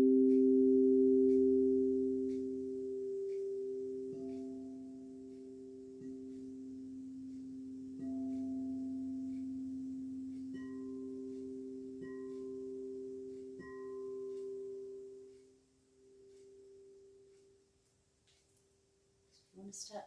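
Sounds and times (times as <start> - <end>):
singing bowls ringing: 0.0 - 15.5.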